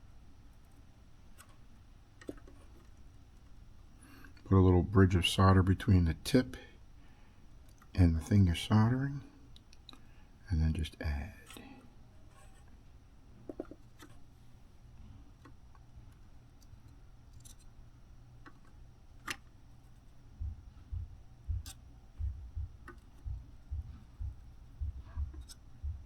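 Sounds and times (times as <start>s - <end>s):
low steady hum: 0.0s - 26.0s
soft low bumps: 20.4s - 26.0s.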